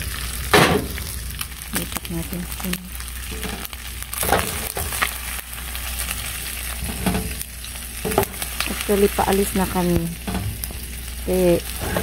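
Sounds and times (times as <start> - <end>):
food sizzling in a pan: 0.0 - 12.0
utensil scraping a pan: 3.2 - 5.3, 6.1 - 7.4, 11.6 - 12.0.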